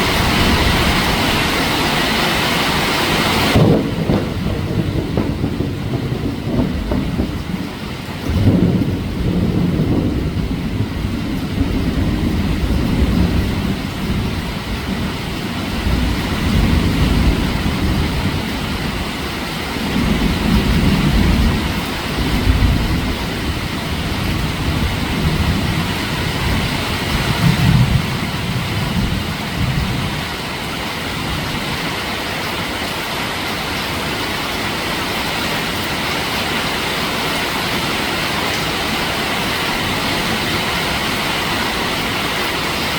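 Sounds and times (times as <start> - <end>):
thunder rumbling: 0.0 - 32.7
heavy rain hissing: 0.0 - 42.9
thunderclap: 3.2 - 30.4.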